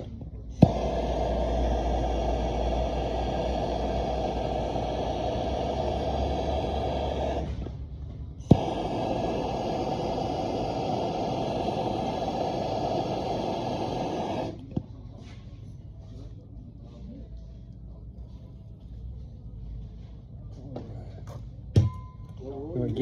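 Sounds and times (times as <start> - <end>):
torch igniter click: 0.6 - 7.6, 8.4 - 14.8
torch flame rushing: 0.6 - 7.8, 8.4 - 14.8.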